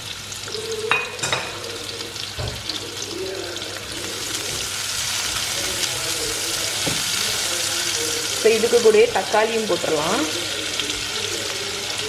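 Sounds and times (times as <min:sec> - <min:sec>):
vegetables sizzling in a pan: 0:00.0 - 0:12.0
knock: 0:06.8 - 0:07.1.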